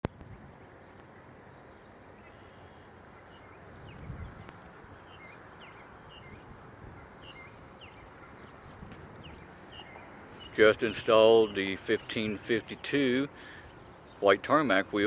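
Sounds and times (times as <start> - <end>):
outdoor background hiss: 0.1 - 15.0
small birds chirping: 0.7 - 15.0.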